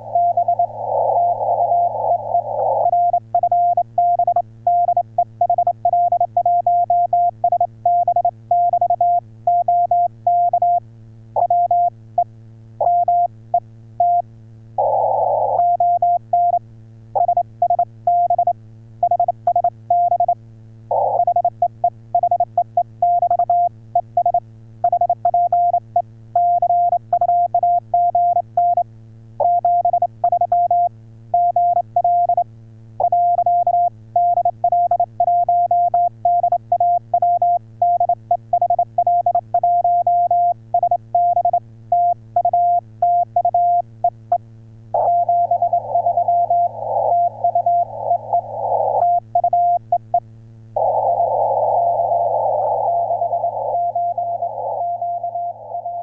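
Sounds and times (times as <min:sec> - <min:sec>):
radio hiss: 0:00.0 - 0:03.1, 0:14.8 - 0:15.8, 0:45.0 - 0:49.4, 0:50.8 - 0:56.0
morse code beeps: 0:00.0 - 0:10.8, 0:19.1 - 0:21.5, 0:22.2 - 0:25.8, 0:33.0 - 0:43.8, 0:45.0 - 0:50.0
faint steady hum: 0:00.0 - 0:56.0.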